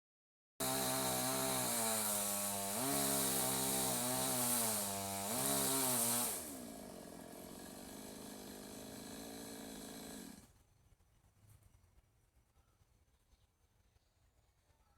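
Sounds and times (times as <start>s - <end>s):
chainsaw running: 0.6s - 10.5s.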